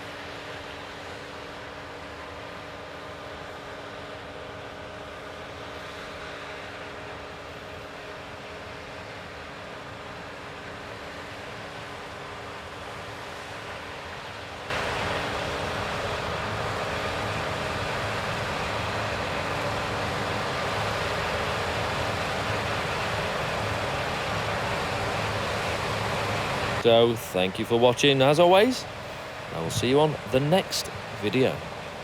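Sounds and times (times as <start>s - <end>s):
combine harvester running: 14.7s - 32.0s.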